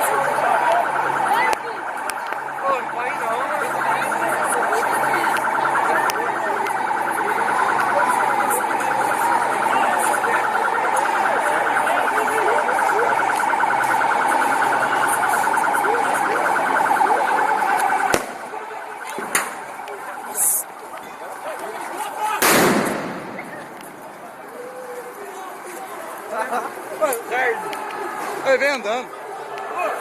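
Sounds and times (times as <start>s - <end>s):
police siren warbling: 0.0s - 27.5s
sharp crack: 17.8s - 20.0s, 22.4s - 24.2s.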